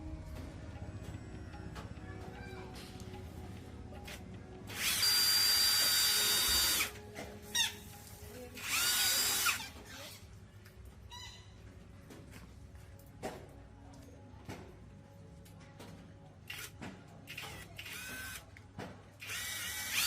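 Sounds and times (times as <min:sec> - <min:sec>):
power tool motor spinning: 0:04.7 - 0:06.9, 0:08.6 - 0:09.7, 0:17.4 - 0:18.4, 0:19.2 - 0:20.0.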